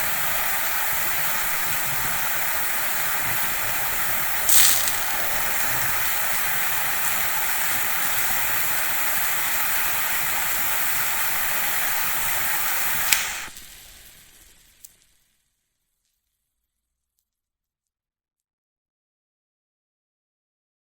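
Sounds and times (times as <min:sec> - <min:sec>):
flame hissing: 0:00.0 - 0:15.9
sharp click: 0:13.1 - 0:13.5.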